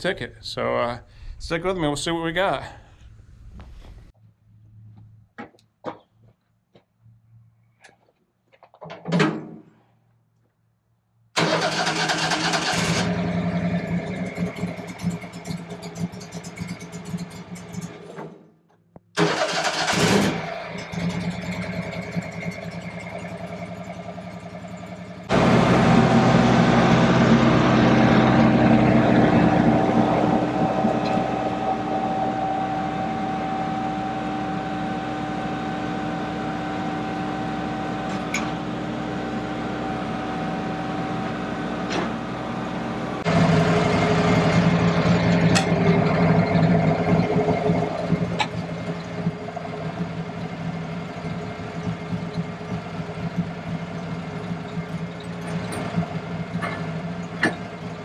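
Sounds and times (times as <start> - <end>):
bandsaw mill droning: 19.2 - 58.0.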